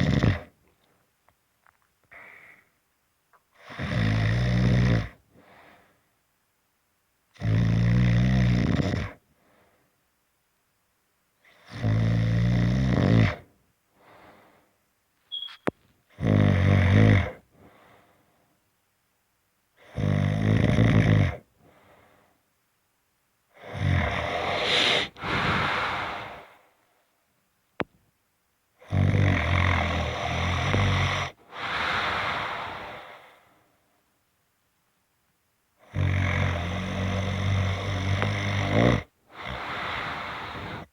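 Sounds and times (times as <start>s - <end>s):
loud snoring: 0.0s - 0.5s, 3.6s - 5.2s, 7.4s - 9.2s, 11.5s - 13.5s, 16.1s - 17.4s, 19.8s - 21.5s, 23.6s - 26.5s, 28.8s - 33.2s, 35.8s - 40.9s
soft breath: 2.1s - 2.8s, 5.3s - 6.2s, 9.3s - 10.0s, 13.9s - 14.8s, 17.5s - 18.6s, 21.6s - 22.5s, 23.6s - 27.2s, 30.2s - 34.0s, 39.3s - 40.9s.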